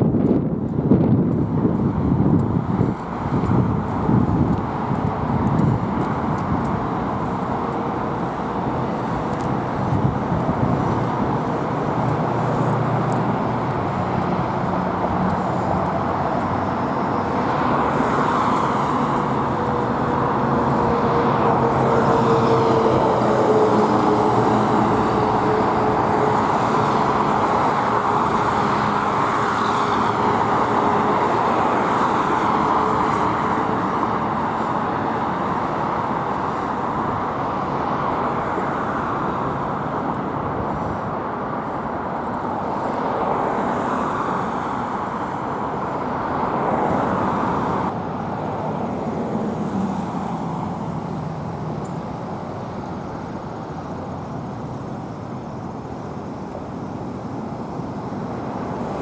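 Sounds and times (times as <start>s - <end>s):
road traffic noise: 0.0s - 59.0s
vehicle passing: 3.3s - 41.0s.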